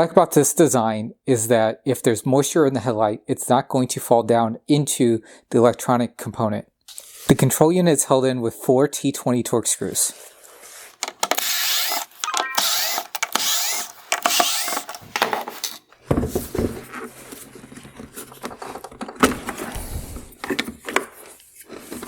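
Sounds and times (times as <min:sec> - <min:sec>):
power screwdriver whirring: 0:11.0 - 0:15.8
plastic parts clicking and knocking: 0:11.0 - 0:22.0.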